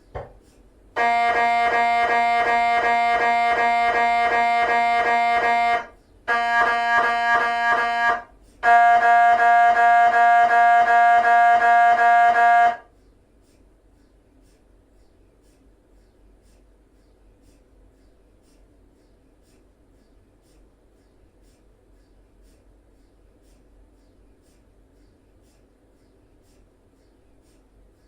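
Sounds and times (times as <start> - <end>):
mri scanner pulsing buzz: 1.0 - 12.9.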